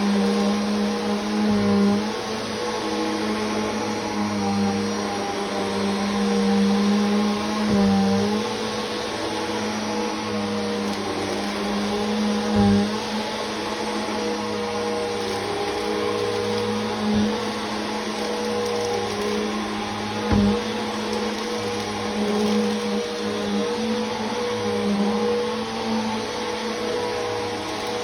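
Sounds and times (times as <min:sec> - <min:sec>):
vacuum cleaner running: 0:00.0 - 0:28.0
dull bumps: 0:20.2 - 0:20.8.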